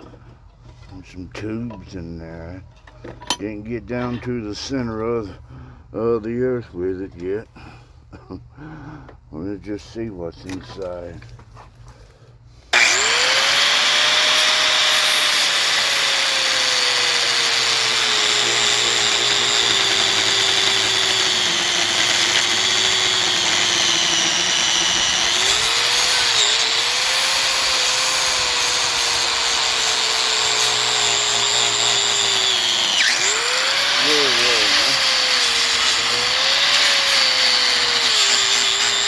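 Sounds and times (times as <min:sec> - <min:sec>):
power tool cutting plastic: 0:12.7 - 0:39.0.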